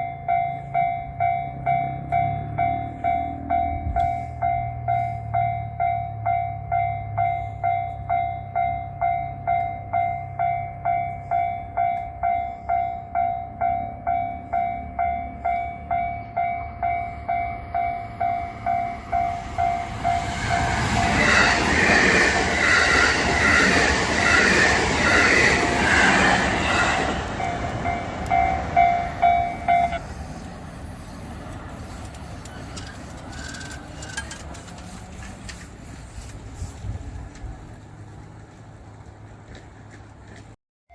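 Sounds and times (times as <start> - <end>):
level crossing warning bell: 0.0 - 30.1
train wheels clattering on rails: 31.4 - 35.8.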